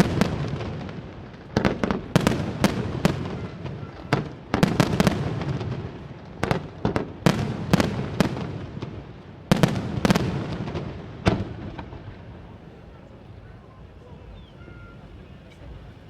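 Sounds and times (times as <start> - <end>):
fireworks bursting with rumble: 0.0 - 13.4.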